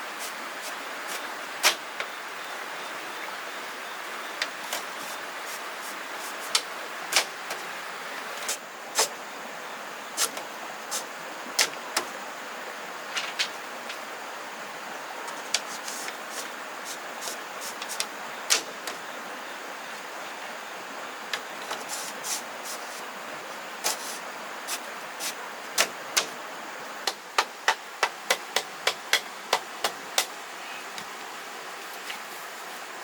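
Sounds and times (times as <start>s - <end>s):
hand tool striking bamboo: 27.1s - 30.3s.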